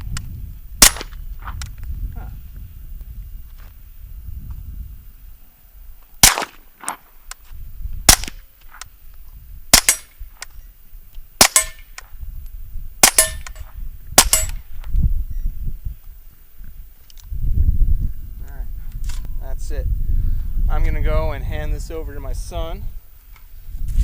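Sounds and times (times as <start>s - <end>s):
suppressed pistol shots: 0.8s - 1.2s, 6.2s - 7.0s, 8.1s - 8.4s, 9.7s - 10.2s, 11.4s - 12.0s, 13.0s - 13.6s, 14.2s - 14.6s.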